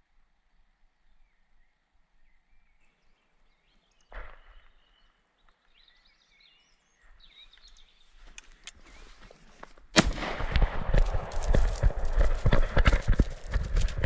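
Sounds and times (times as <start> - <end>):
songbirds chirping and whistling: 1.0 - 9.8.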